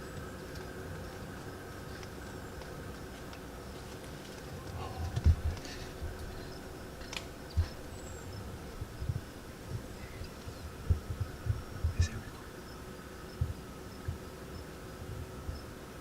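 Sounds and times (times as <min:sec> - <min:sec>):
faint high insect-like background: 0:00.0 - 0:16.0
soft low thumps: 0:04.7 - 0:06.3, 0:07.5 - 0:12.5, 0:13.3 - 0:14.3.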